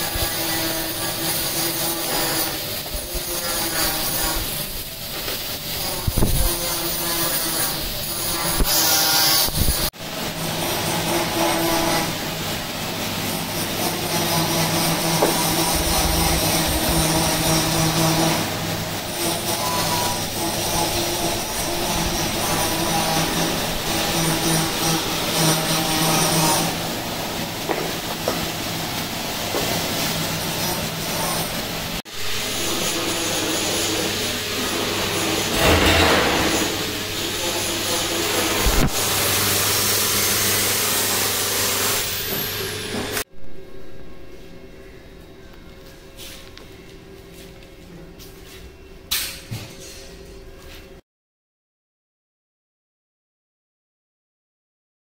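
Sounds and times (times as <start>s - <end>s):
harsh rubbing hiss: 0.0s - 43.2s.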